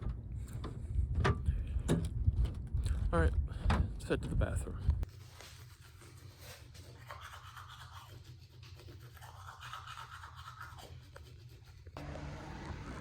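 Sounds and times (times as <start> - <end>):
hum with low tones: 12.0 - 13.0
low steady hum: 12.0 - 13.0.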